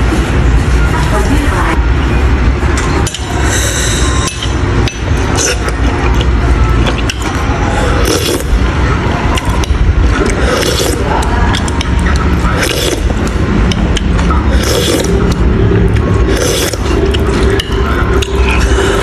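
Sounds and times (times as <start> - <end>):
chewing: 4.3 - 8.6, 9.3 - 19.0.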